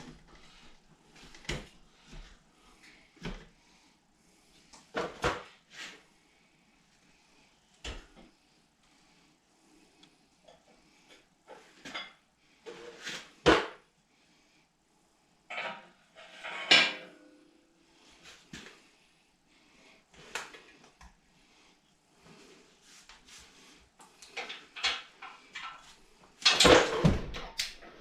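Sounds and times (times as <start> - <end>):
knocks and clatter of objects: 24.3 - 28.0.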